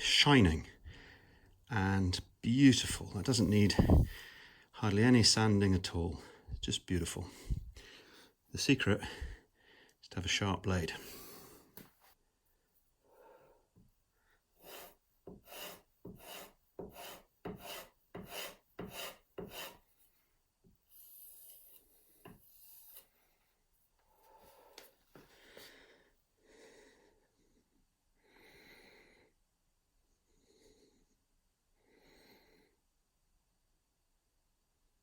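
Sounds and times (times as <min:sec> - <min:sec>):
hand plane shaving wood: 0:14.6 - 0:19.8.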